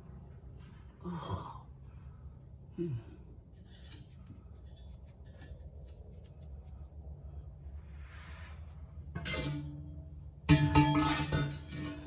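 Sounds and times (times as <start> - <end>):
metal parts scraping and clicking: 3.6 - 6.9.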